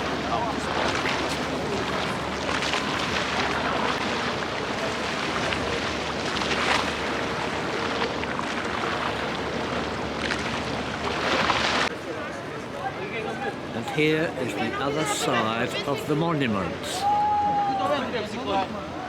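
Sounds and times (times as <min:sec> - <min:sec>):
bus running noise: 0:00.0 - 0:06.3.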